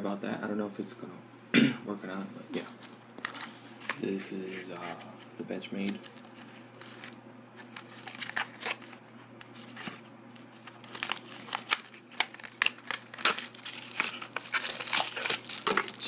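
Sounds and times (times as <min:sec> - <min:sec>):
plastic packaging crinkling: 0:02.8 - 0:05.2, 0:05.8 - 0:16.0.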